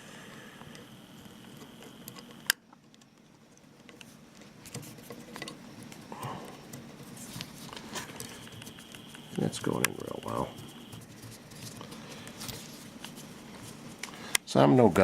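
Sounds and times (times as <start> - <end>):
screwdriver clicking and scraping metal: 8.2 - 11.0.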